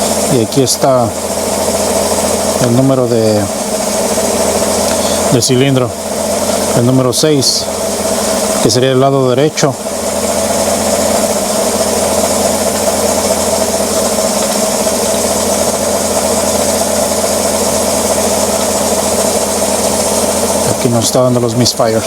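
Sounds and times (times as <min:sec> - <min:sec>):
misfiring engine idling: 0:00.0 - 0:22.0.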